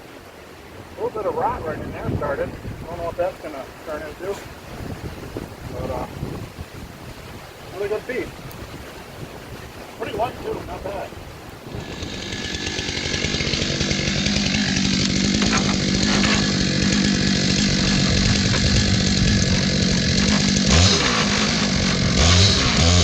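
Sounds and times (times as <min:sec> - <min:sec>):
chainsaw cutting log: 0:03.1 - 0:04.6, 0:11.5 - 0:23.0.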